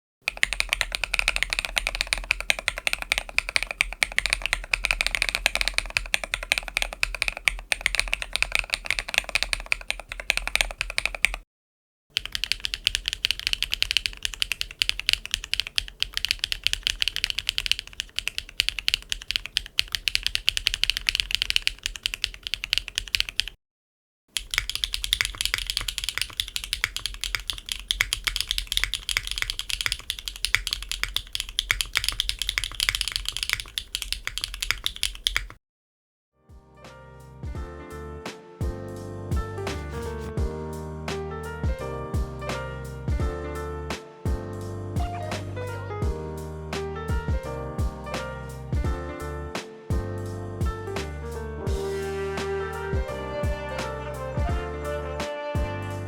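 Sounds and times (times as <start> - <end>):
mechanical keyboard typing: 0.3 - 11.4, 12.2 - 23.6, 24.4 - 35.6.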